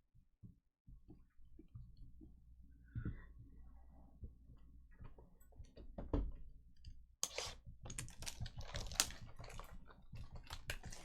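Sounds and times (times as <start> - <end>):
trading card packs crinkling: 7.9 - 11.0.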